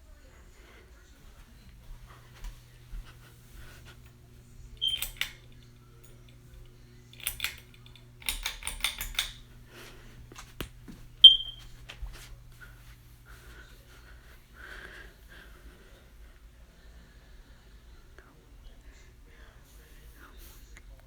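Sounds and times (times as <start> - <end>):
ceiling fan motor humming: 0.0 - 21.0
fan clicks and rattles: 1.7 - 13.1
short high squeaks: 11.2 - 11.7.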